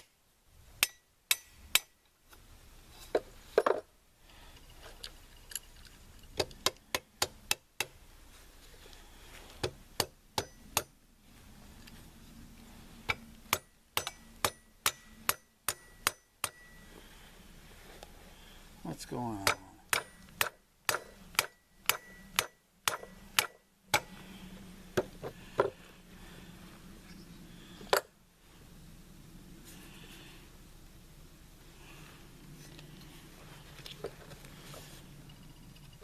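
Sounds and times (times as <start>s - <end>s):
tool tapping metal parts: 13.1s - 16.7s, 19.4s - 24.1s.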